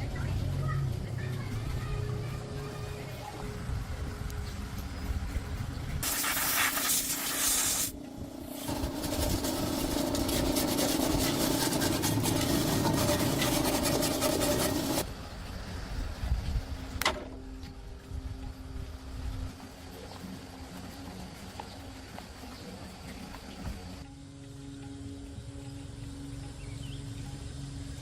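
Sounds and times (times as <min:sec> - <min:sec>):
rasping scraping strokes: 0:06.0 - 0:15.0.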